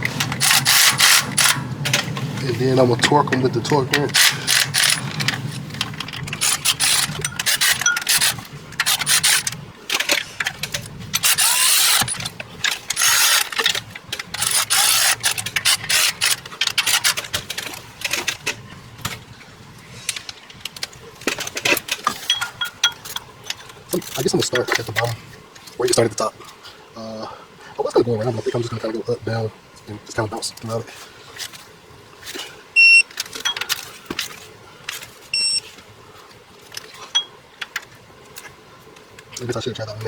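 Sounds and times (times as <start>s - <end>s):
hand ratchet clicking: 0.0s - 2.1s, 3.0s - 18.3s.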